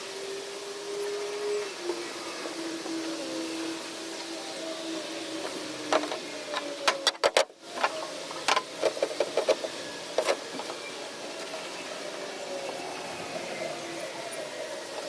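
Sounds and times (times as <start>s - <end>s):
clicks and knocks of tools: 5.9s - 10.8s.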